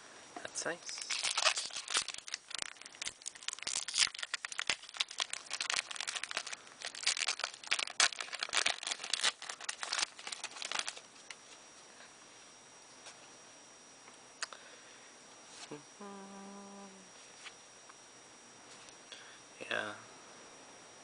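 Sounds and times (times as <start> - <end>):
foil wrapper crinkling and tearing: 0.8 - 11.1.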